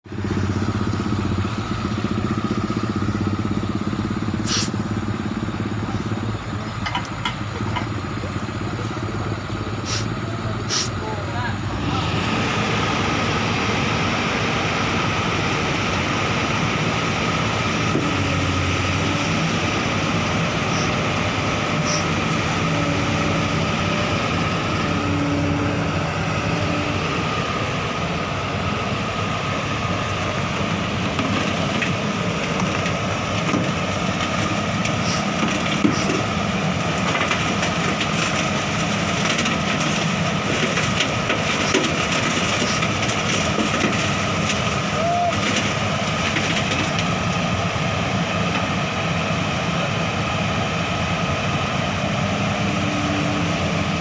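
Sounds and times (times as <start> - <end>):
excavator engine running: 0.0 - 54.0
steel tracks clanking: 5.9 - 12.2.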